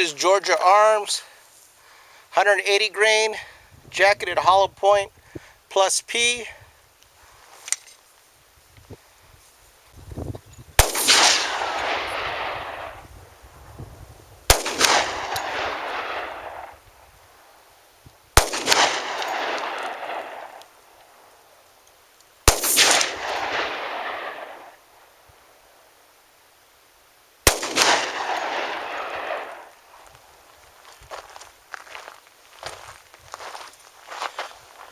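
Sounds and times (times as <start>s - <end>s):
pistol shots: 10.8s - 13.0s, 14.5s - 16.8s, 18.4s - 20.6s, 22.4s - 24.8s, 27.5s - 29.8s
rolling echo of gunshot: 10.8s - 13.1s, 14.5s - 16.8s, 18.4s - 20.6s, 22.5s - 24.8s, 27.5s - 29.8s.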